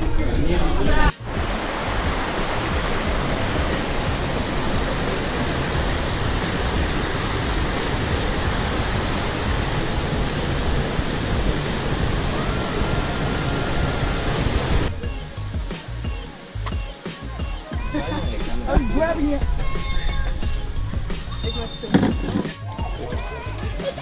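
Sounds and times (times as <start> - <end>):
waterfall roaring: 1.2 - 17.1.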